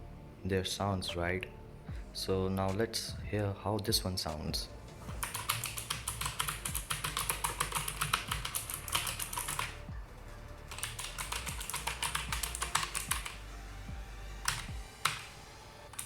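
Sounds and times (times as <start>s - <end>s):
mechanical keyboard typing: 5.2s - 9.8s, 10.7s - 13.4s, 14.4s - 15.3s.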